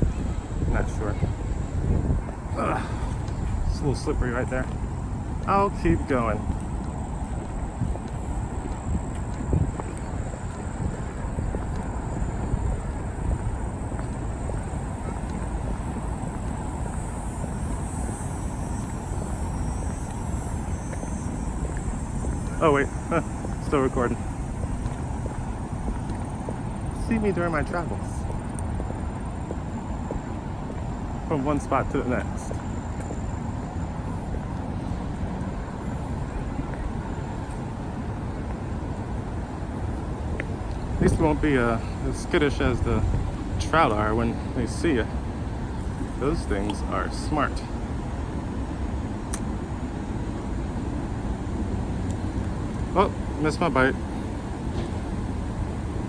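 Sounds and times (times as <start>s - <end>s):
road traffic rumble: 0.0s - 56.0s
wind buffeting microphone: 0.0s - 56.0s
faint high hiss: 11.3s - 24.4s, 40.6s - 52.2s.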